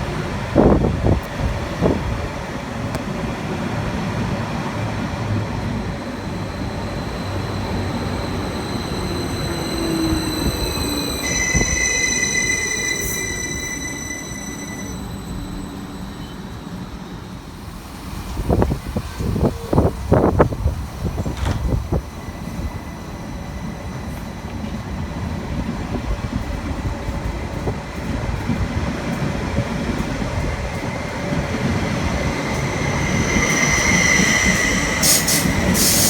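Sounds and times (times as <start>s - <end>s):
train rumbling: 0.0s - 36.0s
wheels squealing: 6.2s - 27.6s, 29.5s - 36.0s.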